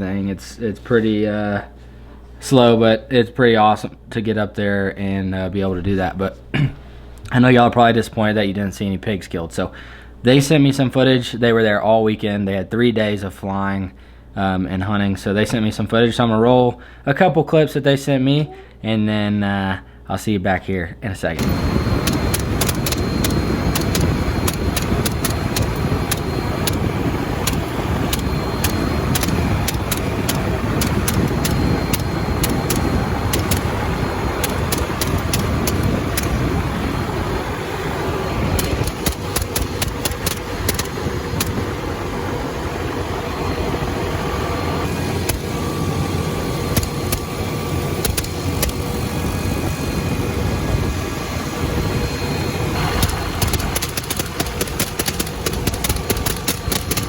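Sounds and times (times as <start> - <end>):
sharp clicks: 21.4 - 36.8, 38.3 - 41.8, 45.0 - 45.8, 46.7 - 49.0, 52.8 - 57.0
helicopter engine and rotor: 21.4 - 57.0.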